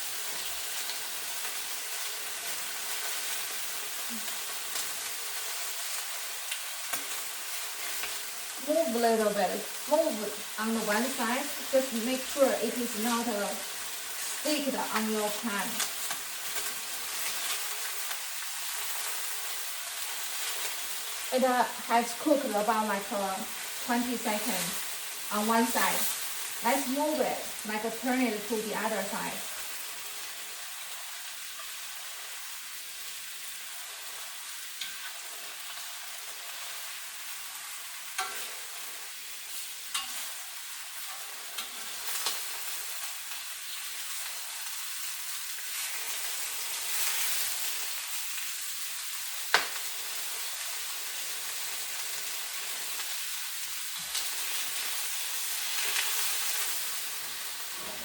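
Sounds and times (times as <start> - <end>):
chicken sizzling in oil: 0.0 - 58.0
pieces clicking in the pan: 49.5 - 49.9.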